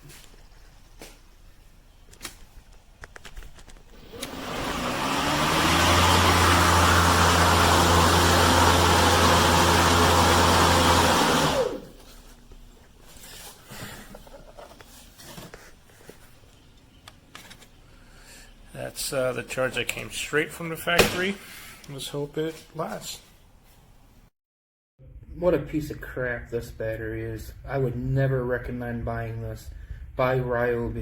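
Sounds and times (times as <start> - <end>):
power tool electric motor: 4.0 - 11.9.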